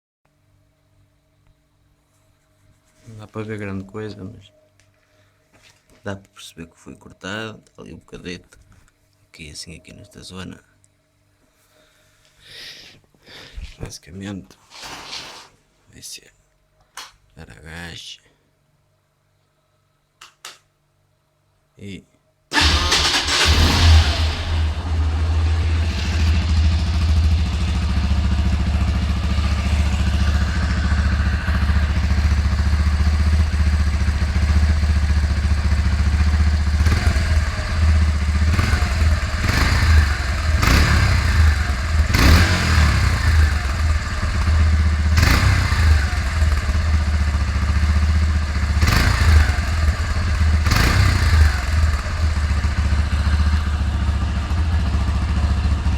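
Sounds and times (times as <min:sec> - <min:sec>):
motorcycle engine starting: 0:22.5 - 0:55.9
motorcycle idling with throttle blips: 0:22.6 - 0:55.9.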